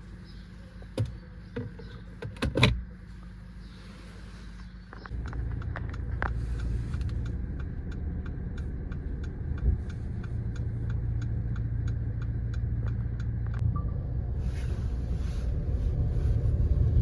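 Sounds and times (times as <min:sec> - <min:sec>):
car engine idling: 0:00.0 - 0:17.0
steady ticking: 0:05.1 - 0:13.6.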